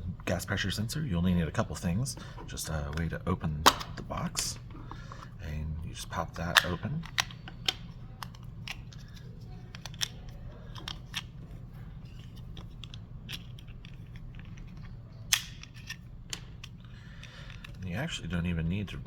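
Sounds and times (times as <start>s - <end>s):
plastic parts clicking and scraping: 1.6s - 5.4s, 6.0s - 18.1s.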